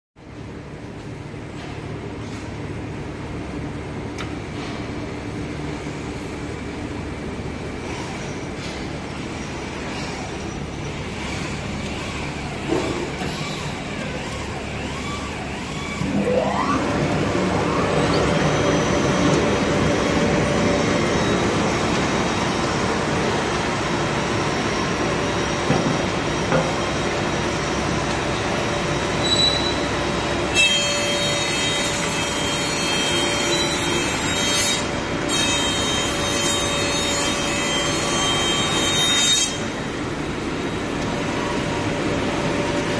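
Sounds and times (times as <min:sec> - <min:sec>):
planer thicknesser humming: 0:11.1 - 0:32.6
motor whine: 0:11.2 - 0:30.4.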